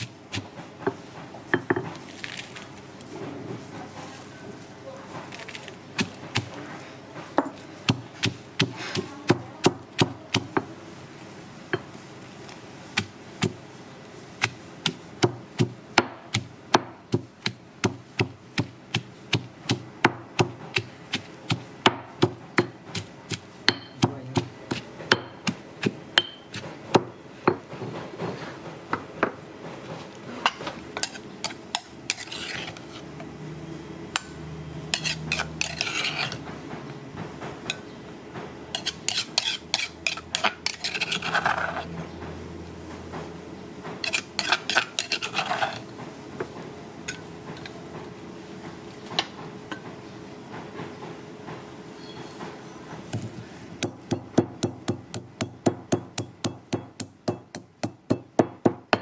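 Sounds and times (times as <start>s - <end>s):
knife chopping on wooden block: 53.2s - 59.0s.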